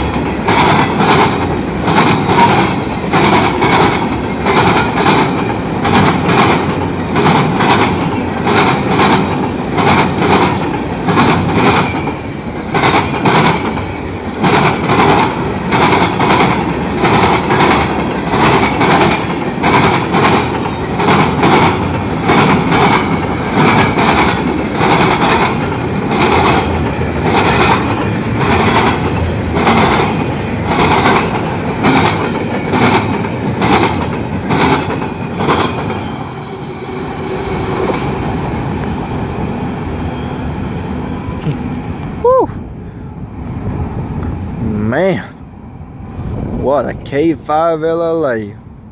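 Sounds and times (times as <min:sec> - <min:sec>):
train wheels clattering over rail joints: 0:00.0 - 0:39.0.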